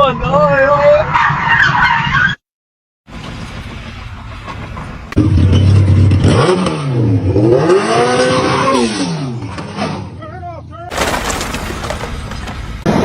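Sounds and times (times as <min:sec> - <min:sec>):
vehicle engine revving: 0:05.1 - 0:10.1.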